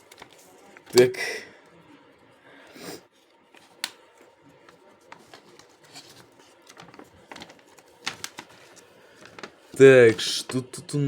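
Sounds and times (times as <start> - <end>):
packaging clicks and rustles: 0.0 - 1.1, 3.3 - 10.6.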